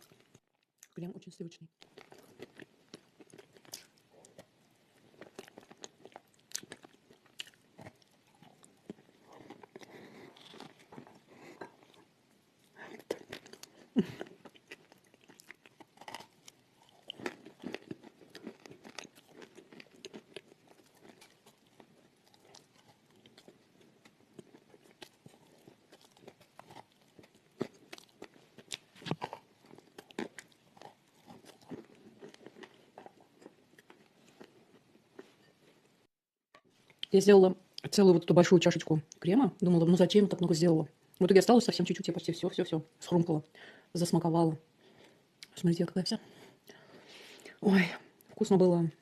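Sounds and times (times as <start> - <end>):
chewing and crunching paste: 0.0 - 1.0, 1.8 - 35.9.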